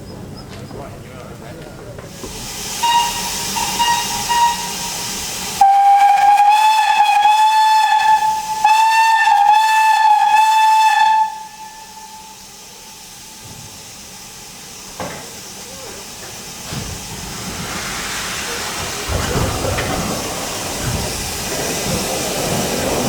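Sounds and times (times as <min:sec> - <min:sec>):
hissing steam: 0:02.1 - 0:23.0
steam locomotive whistle: 0:02.7 - 0:12.4.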